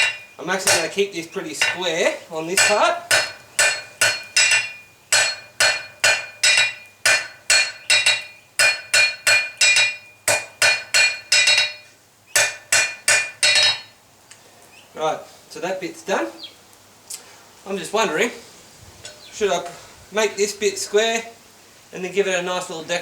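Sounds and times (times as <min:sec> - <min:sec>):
hammer striking metal on anvil: 0:00.0 - 0:01.0, 0:01.6 - 0:01.9, 0:02.6 - 0:13.9.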